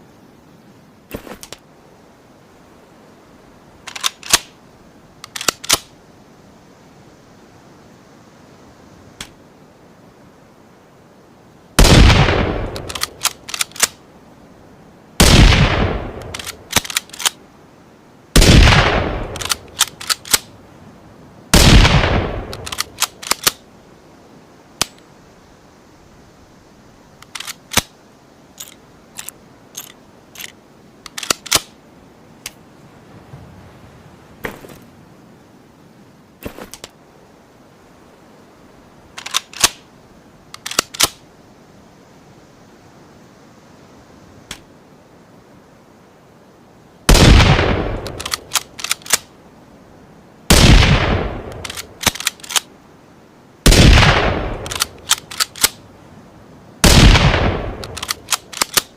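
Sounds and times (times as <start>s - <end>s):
rifle bolt metallic clicks: 3.8s - 4.5s, 5.2s - 5.9s, 12.6s - 14.0s, 16.2s - 17.4s, 19.2s - 20.5s, 22.5s - 23.6s, 27.2s - 27.9s, 28.6s - 31.8s, 39.2s - 39.8s, 40.5s - 41.2s, 47.9s - 49.3s, 51.5s - 52.7s, 54.2s - 55.8s, 56.8s - 58.9s
rifle shots: 11.8s - 13.9s, 15.2s - 17.3s, 18.4s - 20.4s, 21.6s - 23.6s, 47.1s - 49.2s, 50.5s - 52.6s, 53.7s - 55.8s, 56.8s - 58.9s.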